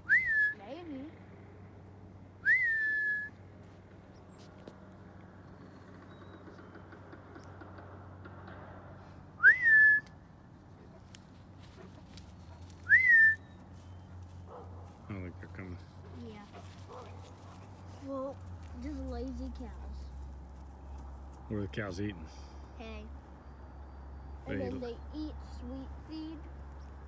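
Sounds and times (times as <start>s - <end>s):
person whistling to call cattle: 0.0s - 0.6s, 2.4s - 3.4s, 9.4s - 10.1s, 12.8s - 13.5s.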